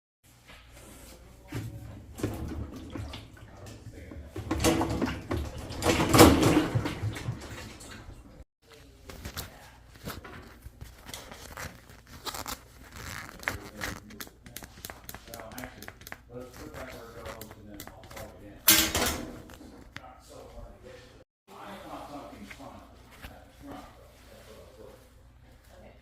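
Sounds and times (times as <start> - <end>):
washing machine rumbling: 1.4 - 8.4
water sloshing in tub: 1.4 - 8.4.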